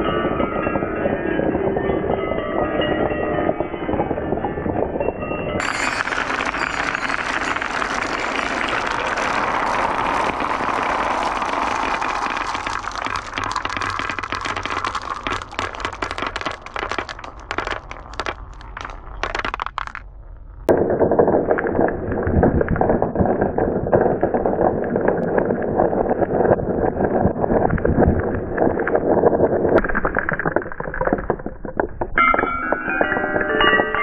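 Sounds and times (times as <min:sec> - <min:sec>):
dull rolling rumble: 0:00.0 - 0:29.8
marbles clicking and knocking: 0:05.6 - 0:20.1, 0:27.6 - 0:34.0
marbles rolling on wooden tracks: 0:05.6 - 0:34.0.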